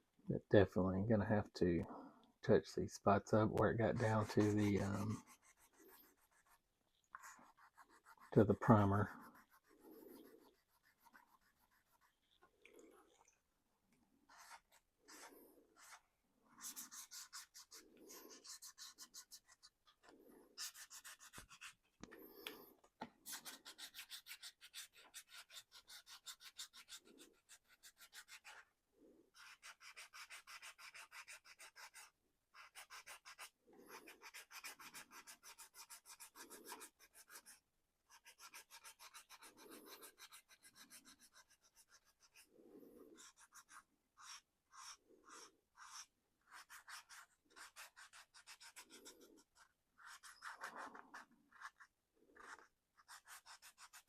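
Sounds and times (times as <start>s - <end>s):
sandpaper scratching plastic: 3.8s - 6.6s, 7.2s - 12.2s, 16.6s - 21.9s, 23.2s - 28.7s, 29.3s - 42.5s, 43.2s - 54.0s.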